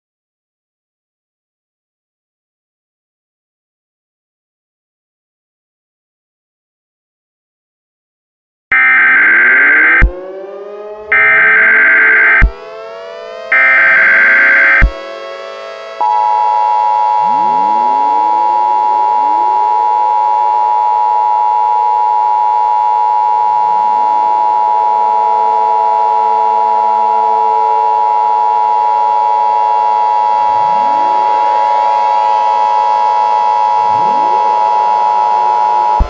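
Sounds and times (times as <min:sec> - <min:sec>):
civil defense siren winding up: 0:08.7 - 0:36.0
steady two-tone alarm: 0:08.7 - 0:36.0.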